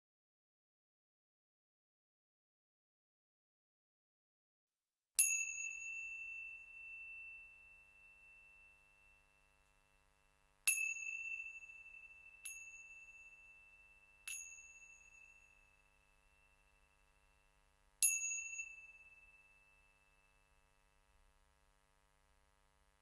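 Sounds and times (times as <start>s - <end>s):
small metal bell ringing: 5.2s - 21.3s.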